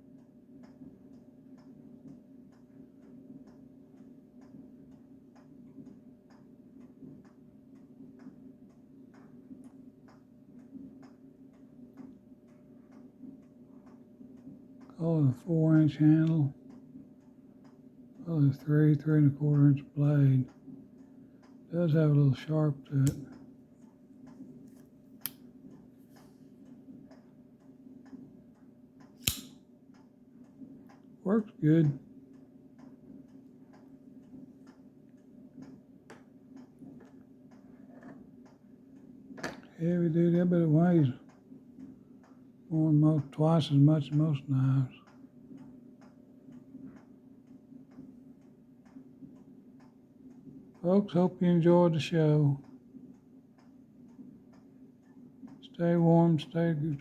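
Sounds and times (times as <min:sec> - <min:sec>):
low steady hum: 0:00.0 - 0:57.0
pocket knife snapping open: 0:29.2 - 0:29.5
faint blade clicks: 0:29.2 - 0:29.6.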